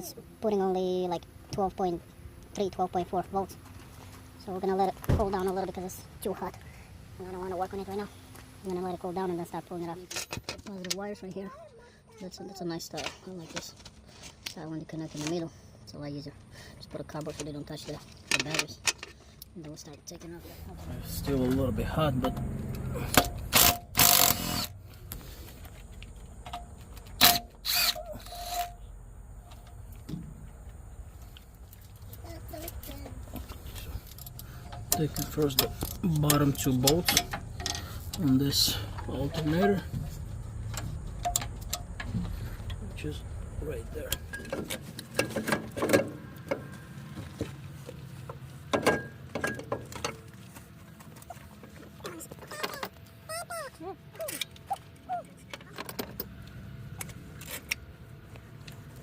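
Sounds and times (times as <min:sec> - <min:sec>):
steady low hum: 0:00.0 - 0:59.0
power wrench bursts: 0:23.1 - 0:24.8, 0:27.2 - 0:28.7.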